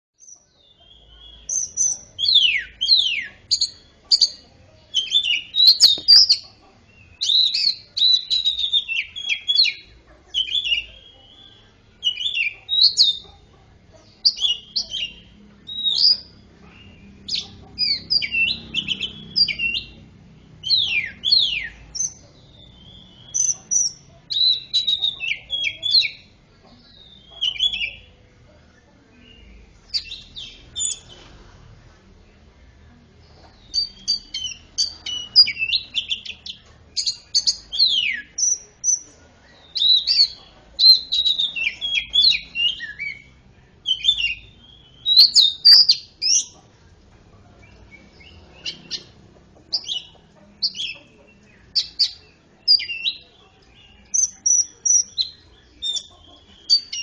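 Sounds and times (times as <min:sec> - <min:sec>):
bird singing chirps and whistles: 0:00.2 - 0:06.4, 0:07.1 - 0:09.8, 0:20.6 - 0:26.2, 0:39.7 - 0:46.5.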